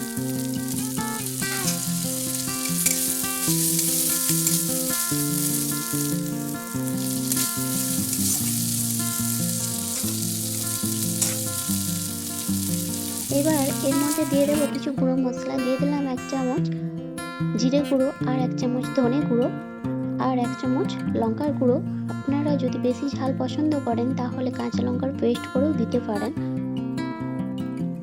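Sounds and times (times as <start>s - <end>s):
frying sizzle: 0.0s - 14.8s
background music with held notes: 0.0s - 28.0s.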